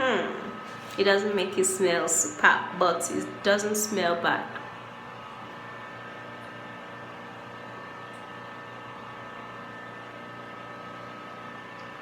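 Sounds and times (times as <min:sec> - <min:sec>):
room tone hum and hiss: 0:00.0 - 0:12.0.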